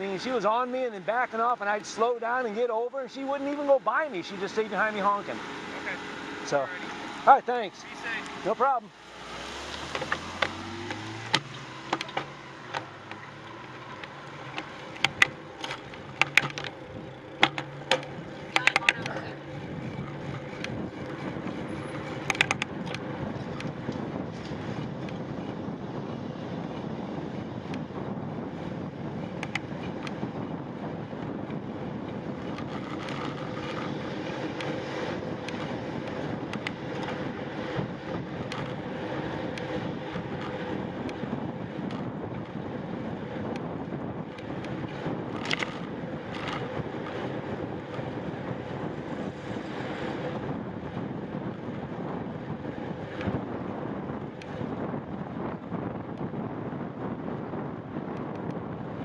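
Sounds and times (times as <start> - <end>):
road and traffic noise: 0.0 - 59.0
wind buffeting microphone: 0.0 - 59.0
sharp clicks or rattles: 9.7 - 25.2, 29.4 - 30.2, 32.4 - 34.8, 45.3 - 47.3.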